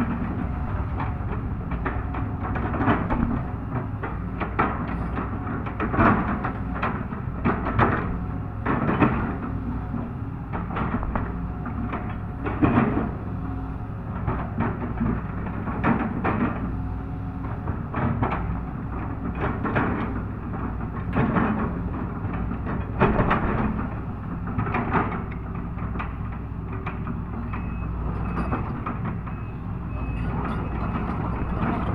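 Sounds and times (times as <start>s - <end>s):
diesel engine running under load: 0.0s - 31.9s
metallic clanks and knocks: 30.1s - 31.9s.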